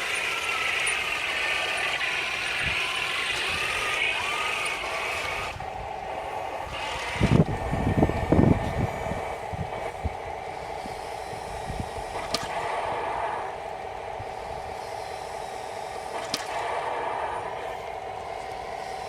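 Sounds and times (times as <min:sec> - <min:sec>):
simulated tank engine drone: 0:00.0 - 0:19.0
sharp clicks: 0:12.1 - 0:12.8.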